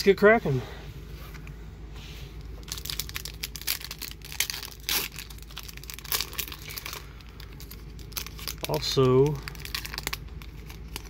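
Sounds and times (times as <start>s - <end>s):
foil wrapper crinkling and tearing: 2.6s - 11.0s.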